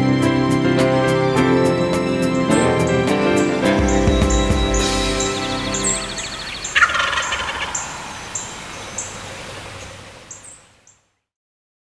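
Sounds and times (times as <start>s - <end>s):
music: 0.0s - 7.6s
turkey gobbling: 4.6s - 10.6s.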